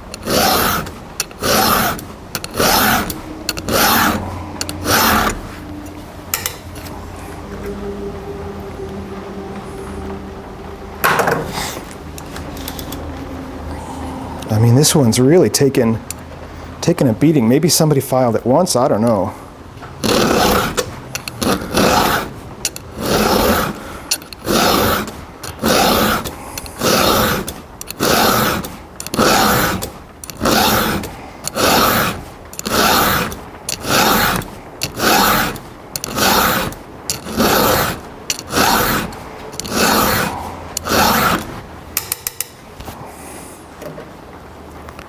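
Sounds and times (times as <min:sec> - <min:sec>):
file rasping on steel: 0:00.0 - 0:06.9, 0:20.0 - 0:42.1.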